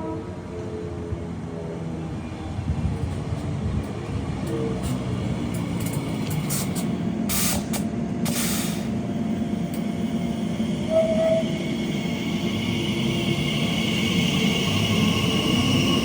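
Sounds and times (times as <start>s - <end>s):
train rumbling: 0.0s - 16.0s
air hisses: 6.5s - 8.9s.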